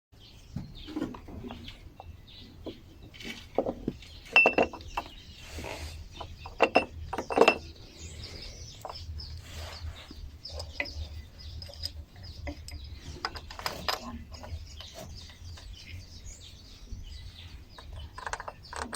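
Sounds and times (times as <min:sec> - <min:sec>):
metal clinking and knocking: 0:00.8 - 0:05.2, 0:06.2 - 0:08.0, 0:10.5 - 0:15.7, 0:17.7 - 0:18.9.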